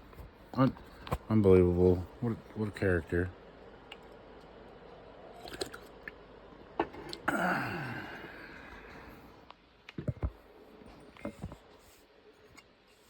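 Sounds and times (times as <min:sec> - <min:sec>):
breathy sigh: 0:07.2 - 0:09.3.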